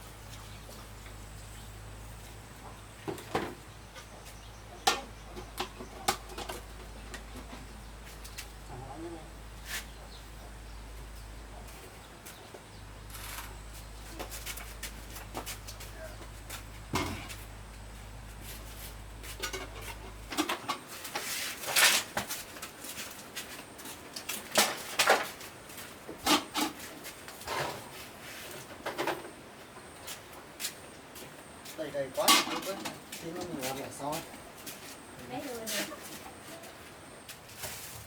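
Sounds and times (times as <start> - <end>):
knocks and clatter of handled objects: 19.2 - 23.6.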